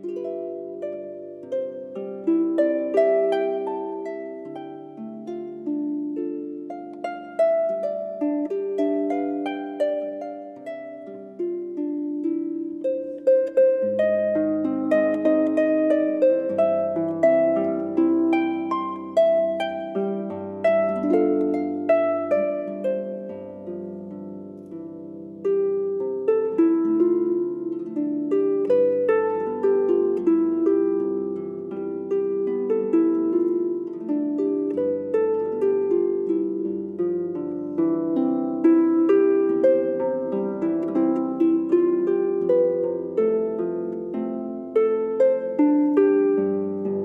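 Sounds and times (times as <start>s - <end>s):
harp melody: 0.0s - 47.0s.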